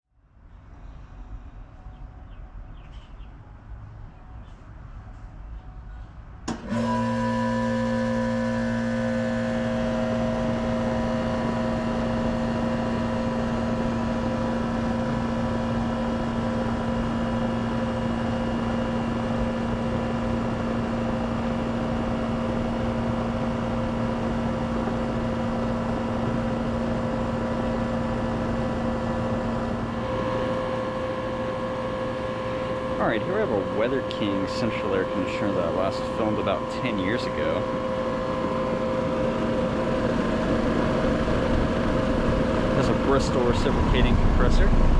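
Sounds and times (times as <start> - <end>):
air conditioner humming: 6.2 - 44.9
air conditioner click: 6.5 - 7.4.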